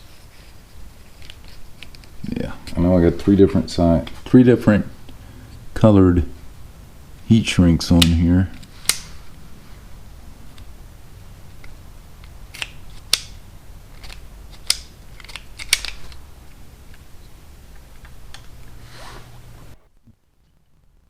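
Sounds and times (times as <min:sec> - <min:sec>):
low steady hum: 0:00.0 - 0:21.0
hand tools snipping and clicking: 0:12.2 - 0:13.3, 0:14.0 - 0:16.2.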